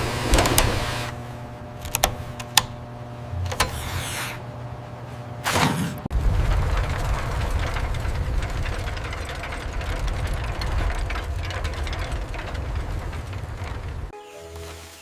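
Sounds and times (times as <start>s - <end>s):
rattling clattering mechanical noise: 0.0s - 14.2s
low rumble: 6.1s - 14.1s.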